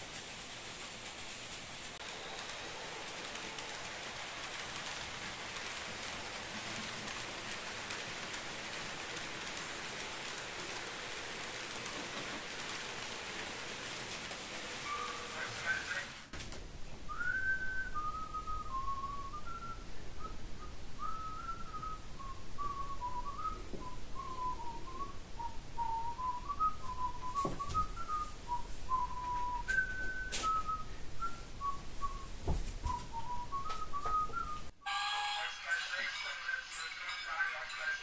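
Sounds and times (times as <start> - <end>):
person whistling a tune: 17.1 - 35.1.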